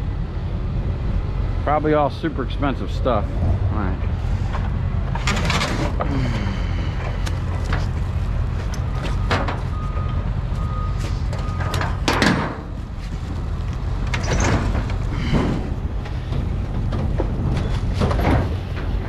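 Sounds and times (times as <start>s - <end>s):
engine running: 0.0s - 19.0s
metallic clanks and knocks: 3.4s - 6.1s, 8.6s - 10.2s, 11.3s - 12.8s, 14.0s - 19.0s.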